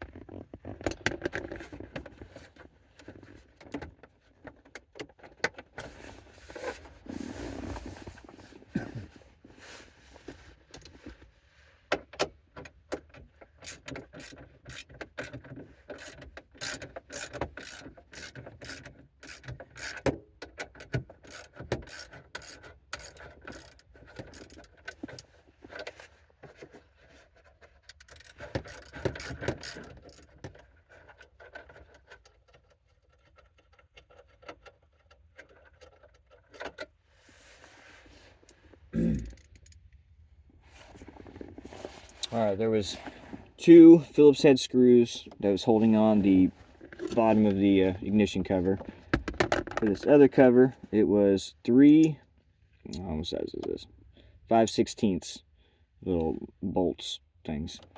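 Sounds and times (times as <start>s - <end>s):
ratcheting hand tool clicking: 15.9s - 20.0s, 21.2s - 24.7s, 27.9s - 30.4s
knocks of tools and plastic trim: 48.8s - 49.9s.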